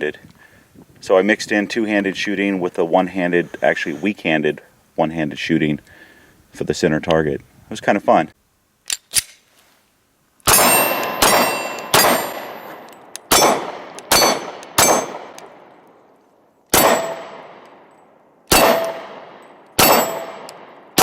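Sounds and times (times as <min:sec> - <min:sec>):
metallic ring of steel targets: 0:10.5 - 0:15.4, 0:16.8 - 0:17.5, 0:18.5 - 0:20.7
pistol shots: 0:10.5 - 0:15.7, 0:16.7 - 0:17.8, 0:18.5 - 0:21.0.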